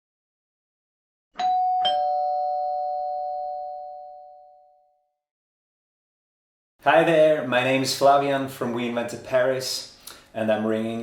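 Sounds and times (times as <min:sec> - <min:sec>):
two-tone doorbell chime: 0:01.4 - 0:05.0.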